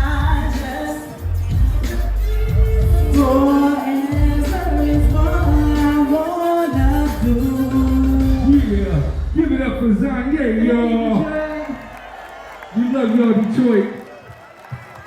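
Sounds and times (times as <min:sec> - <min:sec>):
person singing long notes: 0:00.0 - 0:08.8
steady bass line: 0:00.0 - 0:11.7
band backing: 0:00.0 - 0:13.8.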